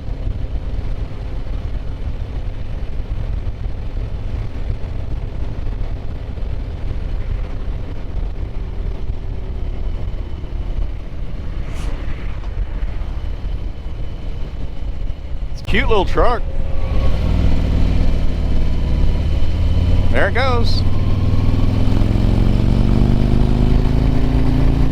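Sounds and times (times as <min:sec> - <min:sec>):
motorcycle engine running: 0:16.7 - 0:24.9.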